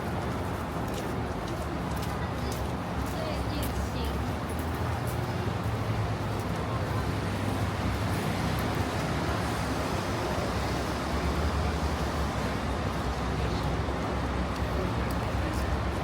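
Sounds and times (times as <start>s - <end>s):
traffic rumble: 0.0s - 16.0s
traffic hiss: 5.4s - 16.0s.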